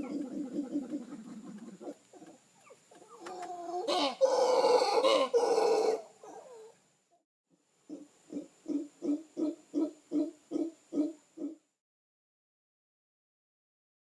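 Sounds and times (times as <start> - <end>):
animal calls: 0.0 - 6.8.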